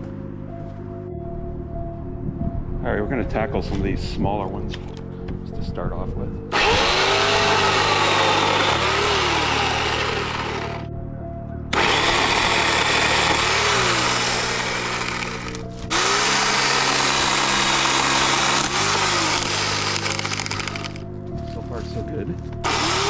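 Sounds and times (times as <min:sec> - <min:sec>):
electric chainsaw cutting branches: 0:06.5 - 0:10.9, 0:11.7 - 0:21.1, 0:22.6 - 0:23.0.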